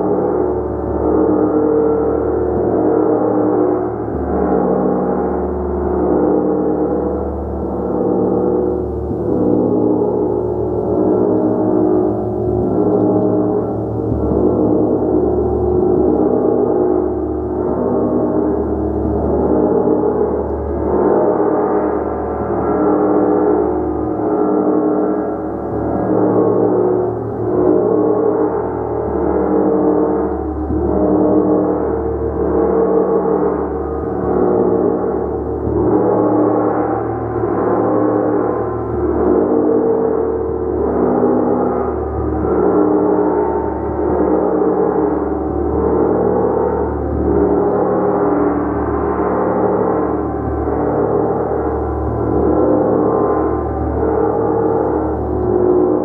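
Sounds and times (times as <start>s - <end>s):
gong being struck: 25.2s - 56.0s.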